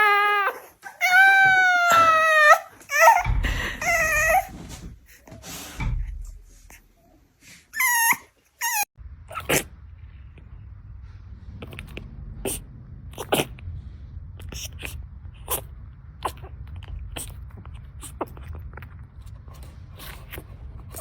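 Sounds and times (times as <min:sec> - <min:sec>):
dog whimpering: 0:00.0 - 0:04.6, 0:07.8 - 0:09.5.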